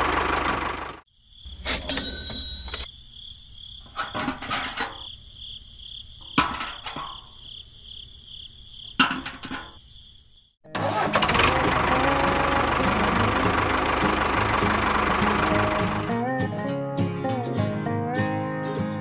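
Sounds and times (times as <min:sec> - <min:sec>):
insects trilling: 0:01.1 - 0:02.0, 0:02.8 - 0:10.6.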